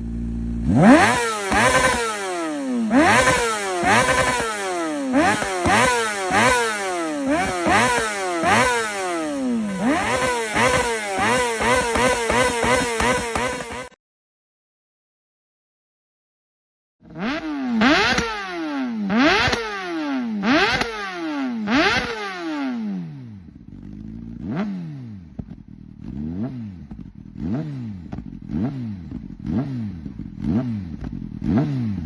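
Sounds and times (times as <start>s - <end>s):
motorcycle engine revving: 0.0s - 14.0s, 17.0s - 32.0s.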